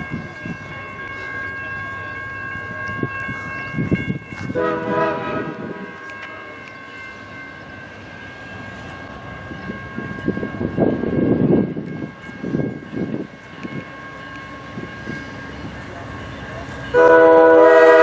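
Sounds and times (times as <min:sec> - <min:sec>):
train rumble: 0:00.0 - 0:18.0
train horn blast: 0:04.5 - 0:05.9, 0:16.9 - 0:18.0.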